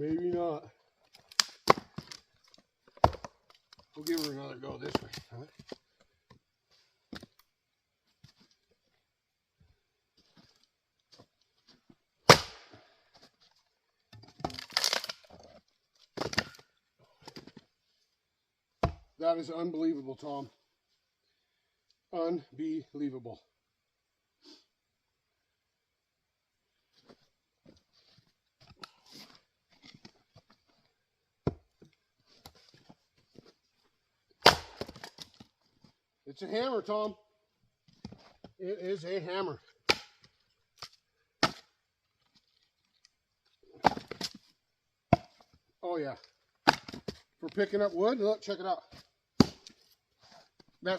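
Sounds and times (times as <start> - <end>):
firewood crunching and rustling: 0.0 - 8.8, 10.2 - 18.0, 26.9 - 36.1, 39.8 - 45.6, 46.2 - 47.9
axe striking wood: 1.3 - 2.2, 3.0 - 3.3, 12.3 - 12.8, 16.2 - 16.6, 18.8 - 19.1, 34.4 - 35.2, 39.8 - 40.3, 41.4 - 41.7, 43.8 - 44.4, 45.1 - 45.4, 46.6 - 47.2, 49.4 - 49.8
wood cracking and clattering: 14.1 - 16.6.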